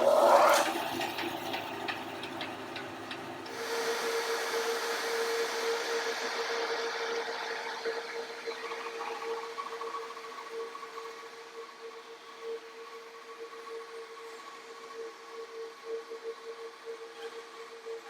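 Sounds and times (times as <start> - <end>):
bandsaw blade cutting wood: 0.0 - 0.8.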